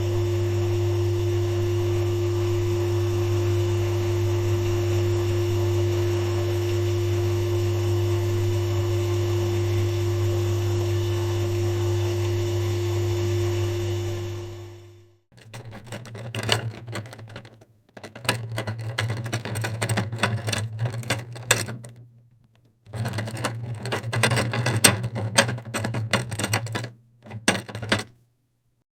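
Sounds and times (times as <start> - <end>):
suitcase wheels rolling on floor: 15.4 - 28.1.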